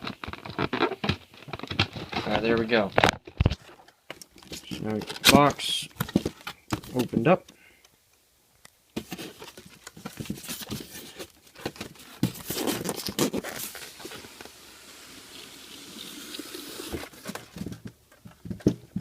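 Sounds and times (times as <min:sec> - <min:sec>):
cardboard box rustling and tearing: 0:09.0 - 0:14.6.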